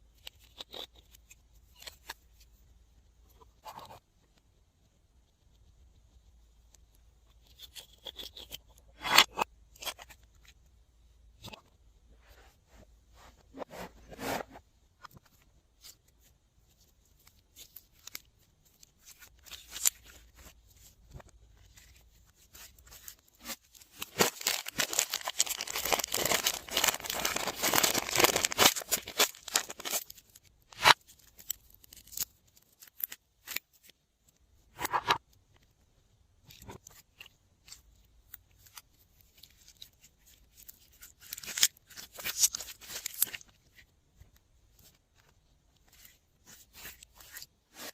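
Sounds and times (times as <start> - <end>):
slime crackling: 23.4 - 30.1.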